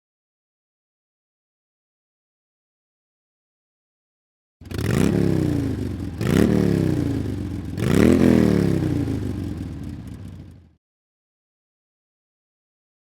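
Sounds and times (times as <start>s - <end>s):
engine revving: 4.6s - 10.6s.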